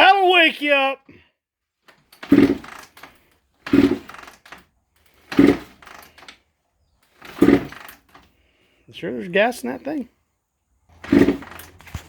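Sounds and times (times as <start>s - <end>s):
engine spinning over compression: 2.2s - 4.4s, 5.0s - 6.2s, 7.0s - 8.3s, 10.9s - 12.0s.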